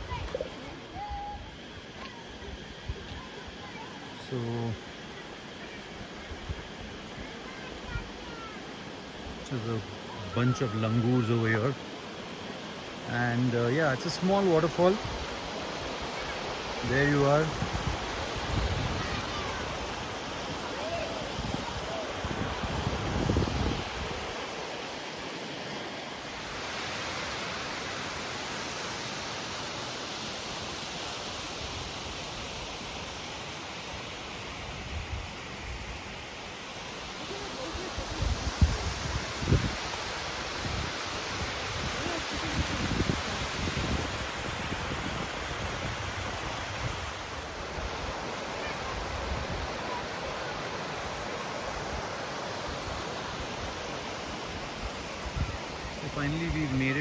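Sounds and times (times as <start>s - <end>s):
small waterfall rushing: 0.0s - 57.0s.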